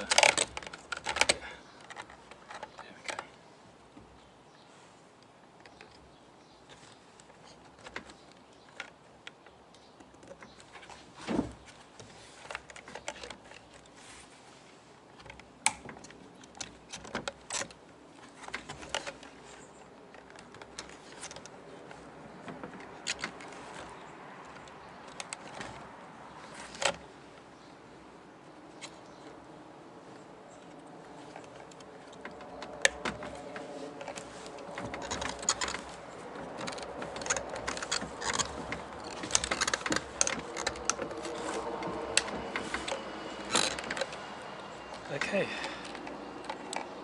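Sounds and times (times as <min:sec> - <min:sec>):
small clicks and taps of parts: 0:00.0 - 0:04.2, 0:15.2 - 0:25.8.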